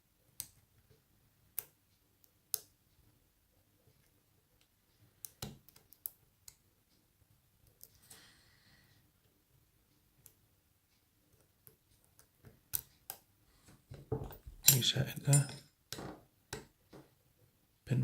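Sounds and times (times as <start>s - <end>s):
lock pick clicking pins: 14.3s - 15.6s.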